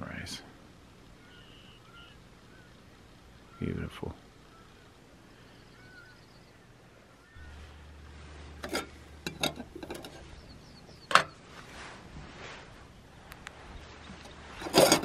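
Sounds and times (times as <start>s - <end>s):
low rumble: 7.3s - 10.9s.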